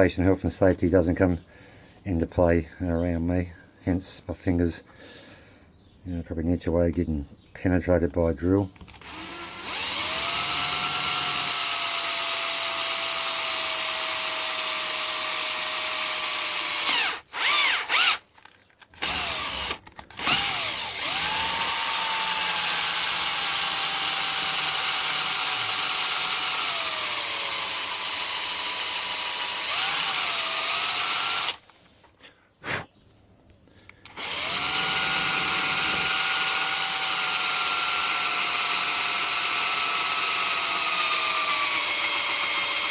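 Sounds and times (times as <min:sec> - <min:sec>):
electric drill boring into metal: 0:09.0 - 0:18.2, 0:19.0 - 0:31.6, 0:34.1 - 0:42.9.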